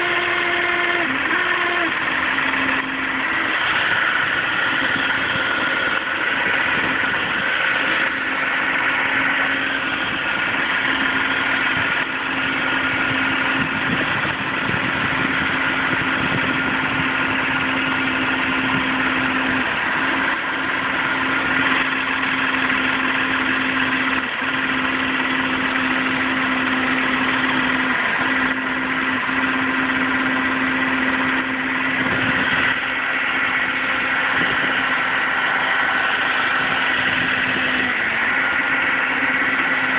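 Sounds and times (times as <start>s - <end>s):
car engine humming: 0.0s - 39.9s.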